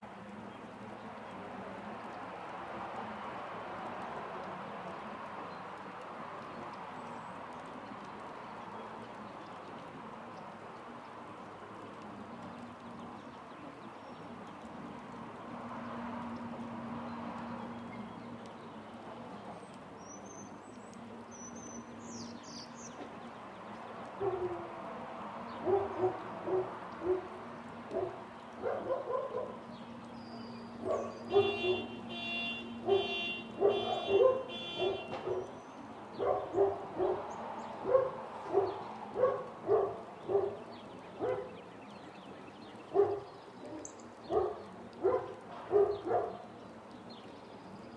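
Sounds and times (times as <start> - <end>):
dog barking: 24.2 - 24.7, 25.6 - 29.6, 30.8 - 32.0, 32.8 - 35.5, 36.2 - 41.6, 42.9 - 46.5.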